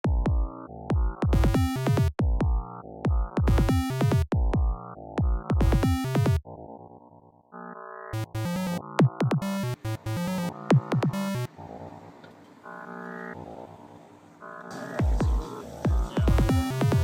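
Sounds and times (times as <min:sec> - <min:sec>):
drum-machine kick beat: 0:00.0 - 0:06.4, 0:08.2 - 0:11.5, 0:14.7 - 0:17.0
electronic synthesizer music: 0:00.1 - 0:11.6, 0:12.6 - 0:13.4, 0:14.4 - 0:17.0.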